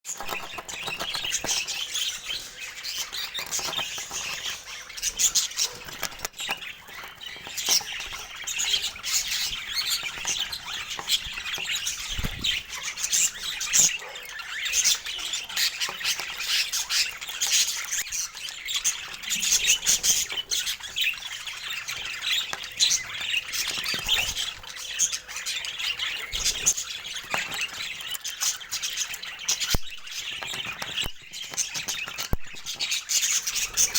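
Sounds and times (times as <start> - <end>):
budgerigars chattering: 0.2 - 33.9.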